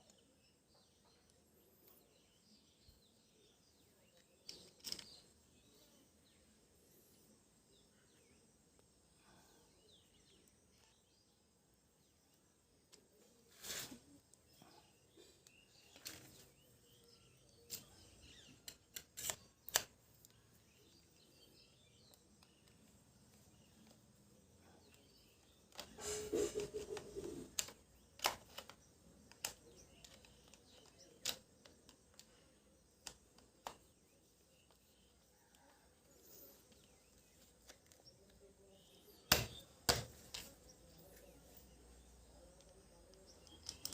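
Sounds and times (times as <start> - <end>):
faint bird chirps: 0.0 - 43.9
small parts and tools clattering: 4.2 - 5.4, 15.3 - 16.6, 17.7 - 20.4.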